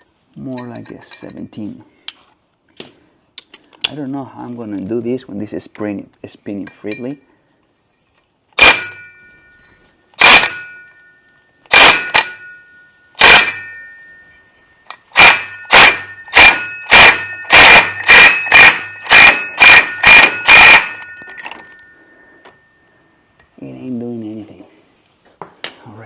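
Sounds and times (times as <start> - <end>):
hammer striking steel: 8.6 - 22.6.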